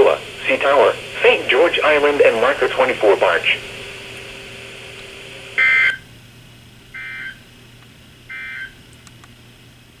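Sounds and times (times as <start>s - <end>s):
faint radio hiss: 0.0s - 6.0s.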